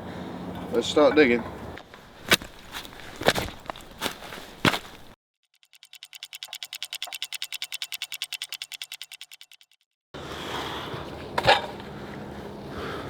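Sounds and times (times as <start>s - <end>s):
outdoor background noise: 0.0s - 9.3s, 10.2s - 13.0s
fast clock ticking: 5.4s - 10.0s.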